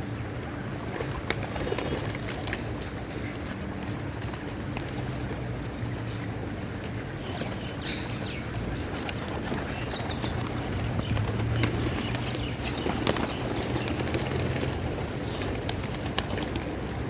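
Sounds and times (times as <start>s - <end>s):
wings flapping: 0.8s - 3.0s, 8.4s - 17.0s
pigeons cooing: 4.0s - 17.0s.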